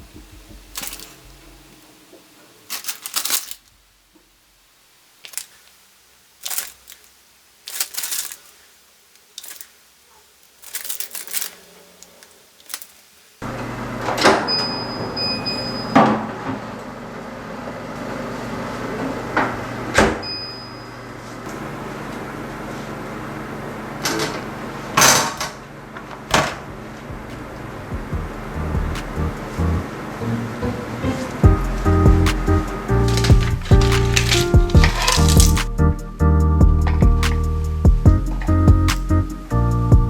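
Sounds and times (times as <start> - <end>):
appliance hum: 0.0 - 40.0
utensils clattering: 0.7 - 1.8, 2.5 - 3.7, 5.2 - 5.7, 6.4 - 7.1, 7.7 - 8.6, 9.2 - 9.8, 10.4 - 13.3, 30.8 - 35.7.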